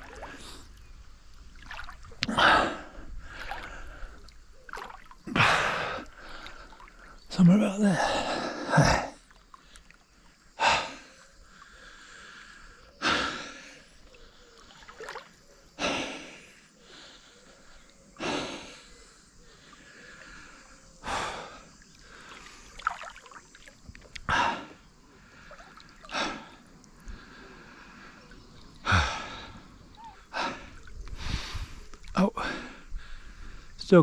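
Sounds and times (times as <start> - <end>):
splashing: 0.0 - 10.9, 14.3 - 16.3, 19.6 - 24.6, 25.2 - 26.9
faint water sloshing: 0.0 - 34.0
swimmer breathing hard: 1.8 - 7.2, 10.6 - 14.7, 15.7 - 23.2, 24.3 - 33.8.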